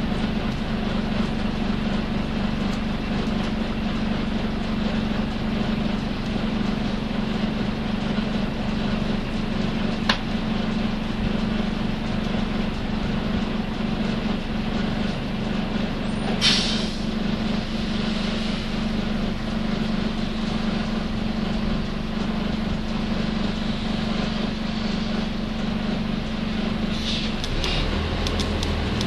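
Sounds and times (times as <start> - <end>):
bus engine droning hum: 0.0 - 29.0.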